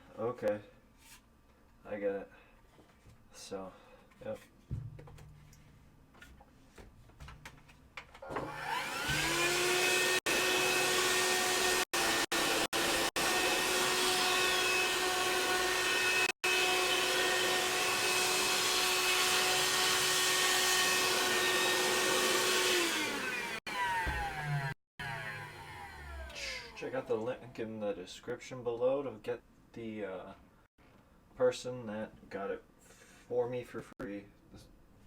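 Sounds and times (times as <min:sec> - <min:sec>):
handheld vacuum cleaner motor: 0:08.2 - 0:27.2.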